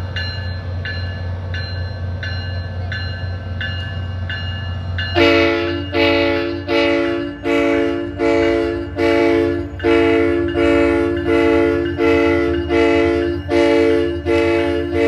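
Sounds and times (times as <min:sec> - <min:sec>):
train air horn short blasts: 0:05.2 - 0:15.0.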